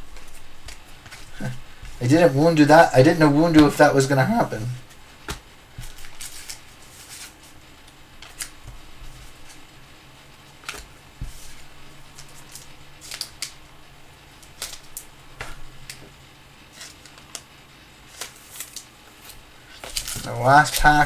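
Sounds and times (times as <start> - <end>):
faint low hum: 0.0 - 21.0
cards clicking and swishing: 0.1 - 4.7, 10.6 - 13.6, 18.1 - 21.0.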